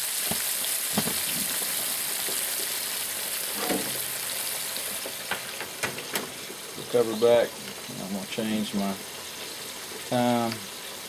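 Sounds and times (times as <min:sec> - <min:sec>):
chicken frying in hot oil: 0:00.0 - 0:11.0.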